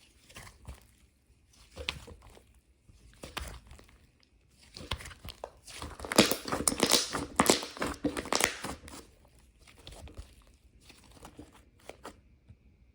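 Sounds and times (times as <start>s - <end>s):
packaging crinkling: 5.3s - 9.1s.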